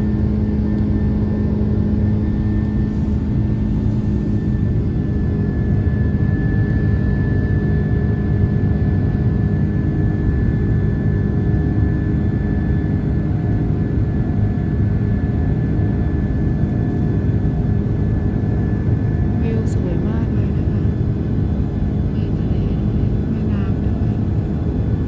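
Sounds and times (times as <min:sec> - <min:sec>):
jet engines droning: 0:00.0 - 0:25.0.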